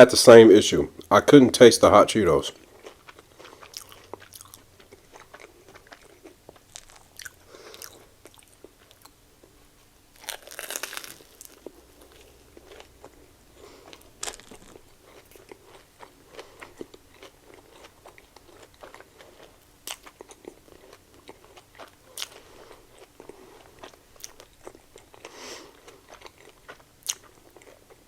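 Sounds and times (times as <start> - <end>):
crunchy chewing and biting: 2.5 - 9.2, 10.2 - 28.0.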